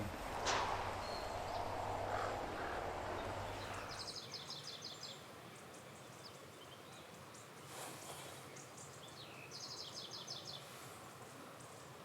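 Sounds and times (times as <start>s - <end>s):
steady background noise: 0.0s - 7.7s.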